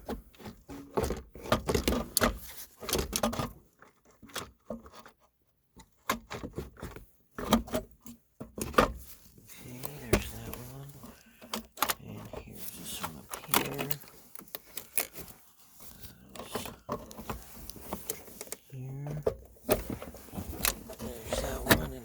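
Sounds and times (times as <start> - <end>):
hands handling plastic parts: 0.0 - 22.0.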